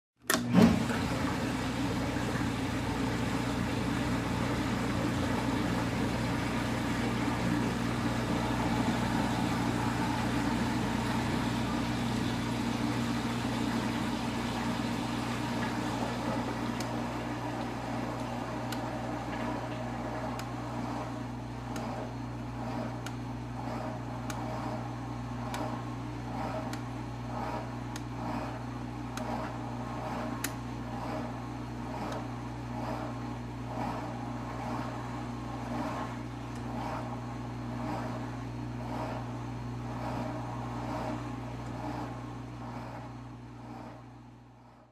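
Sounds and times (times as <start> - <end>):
dishwasher motor hum: 0.2 - 44.9
water washing: 0.5 - 21.1.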